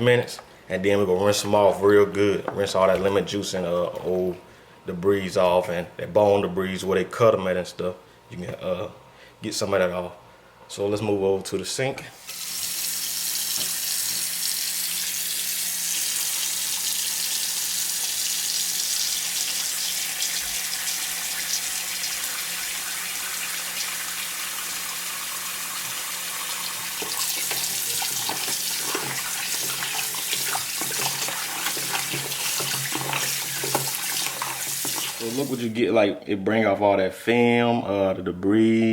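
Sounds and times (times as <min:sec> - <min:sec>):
faucet running into a sink: 0:12.3 - 0:35.7
water splashing over meat: 0:27.0 - 0:35.6.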